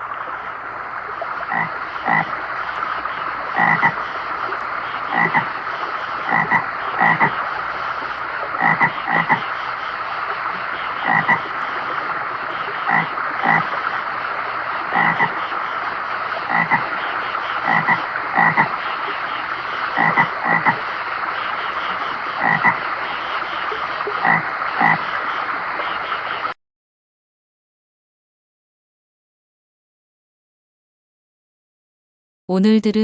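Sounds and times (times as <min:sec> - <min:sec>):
steady hiss: 0:00.0 - 0:26.5
toad croaking: 0:01.5 - 0:02.4, 0:03.5 - 0:04.0, 0:05.0 - 0:05.6, 0:06.3 - 0:07.4, 0:08.6 - 0:09.5, 0:11.0 - 0:11.5, 0:12.8 - 0:13.8, 0:14.9 - 0:15.4, 0:16.5 - 0:16.9, 0:17.6 - 0:18.8, 0:20.0 - 0:20.8, 0:22.4 - 0:22.8, 0:24.2 - 0:25.0.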